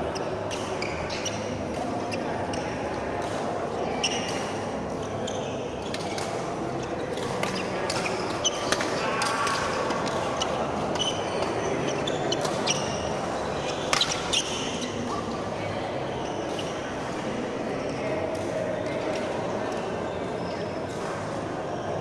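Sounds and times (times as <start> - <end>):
murmur of voices: 0.0 - 22.0
shoes squeaking on court floor: 0.1 - 2.8, 3.9 - 8.8, 10.2 - 16.8.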